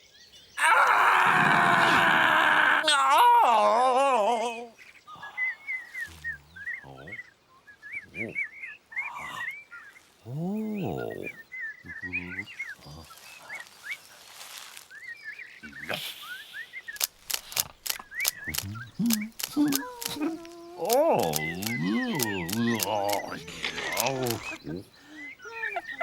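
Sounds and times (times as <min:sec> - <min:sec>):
short low pitched calls: 0:15.6 - 0:26.0
sharp clicks: 0:16.9 - 0:24.6.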